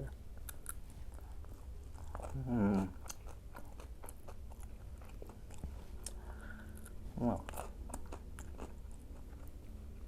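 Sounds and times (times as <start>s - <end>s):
chewing and crunching food: 0.0s - 10.0s.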